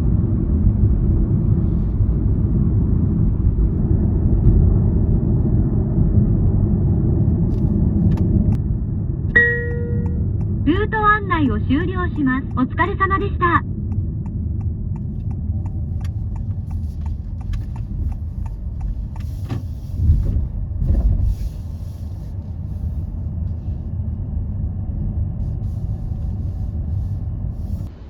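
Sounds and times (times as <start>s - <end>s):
car rumbling on the move: 0.0s - 28.0s.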